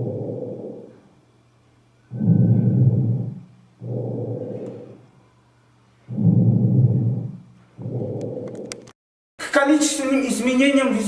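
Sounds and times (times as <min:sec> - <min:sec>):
breath sounds through stethoscope: 0:02.2 - 0:05.1.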